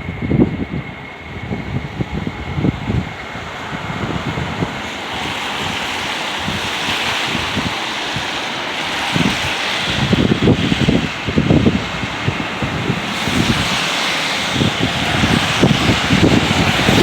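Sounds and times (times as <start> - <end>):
storm wind blowing: 0.0 - 17.0
wind buffeting microphone: 0.0 - 17.0.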